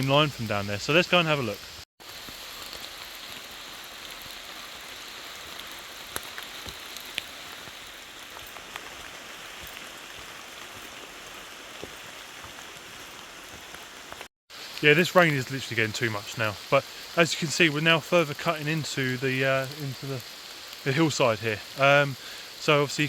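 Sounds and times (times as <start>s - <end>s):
heavy rain falling: 0.0s - 23.0s
raindrop taps: 6.1s - 9.9s.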